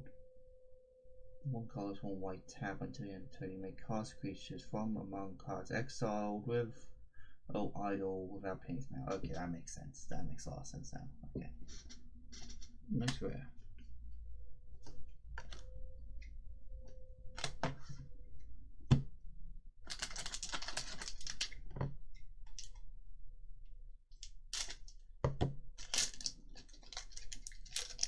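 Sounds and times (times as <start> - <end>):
cards rustling: 19.9 - 21.7, 24.2 - 24.9, 25.8 - 28.0.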